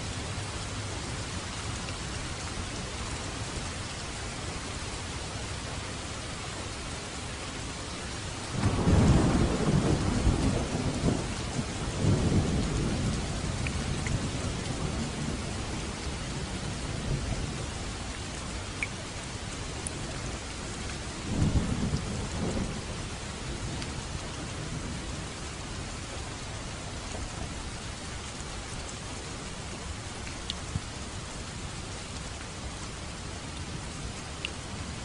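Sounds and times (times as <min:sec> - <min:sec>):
steady rain falling: 0:00.0 - 0:35.0
low thunder rumbling: 0:08.6 - 0:17.8, 0:21.2 - 0:28.0.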